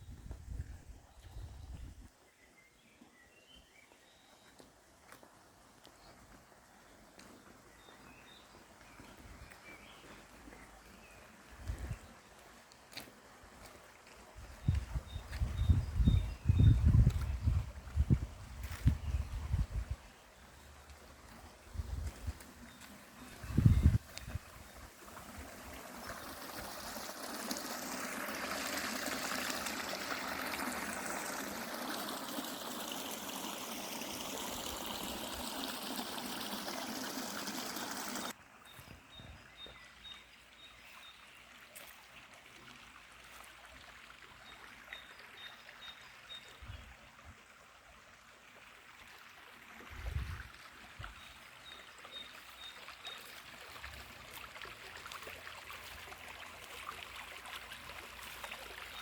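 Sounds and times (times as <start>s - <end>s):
water rushing: 20.4s - 38.4s, 48.5s - 59.0s.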